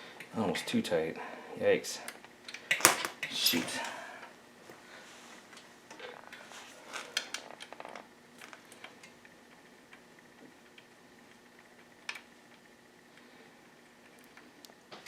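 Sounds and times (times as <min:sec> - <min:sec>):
hand tools and metal parts clicking: 0:02.8 - 0:03.9.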